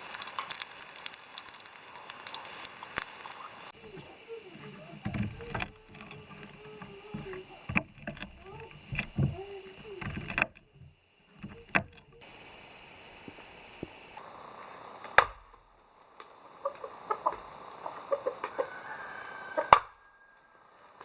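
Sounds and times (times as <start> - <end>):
chickens clucking: 3.7 - 14.2, 16.6 - 19.7
sharp knocks: 4.0 - 12.2.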